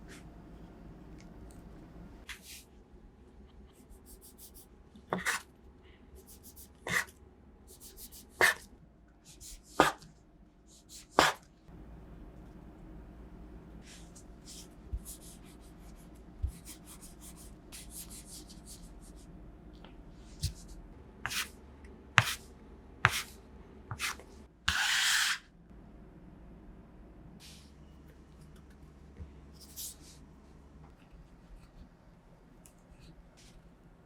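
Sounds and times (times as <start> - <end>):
hands rubbing dough: 23.1 - 25.4.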